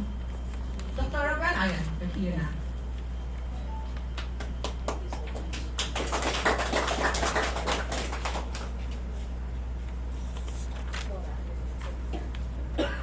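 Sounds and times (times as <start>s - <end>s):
sound system hum: 0.0s - 13.0s
small audience clapping: 4.1s - 9.0s.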